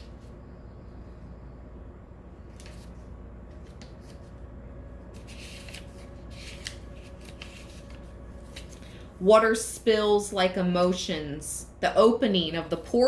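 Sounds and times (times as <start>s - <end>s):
cards being shuffled: 2.5s - 4.4s, 5.1s - 9.0s.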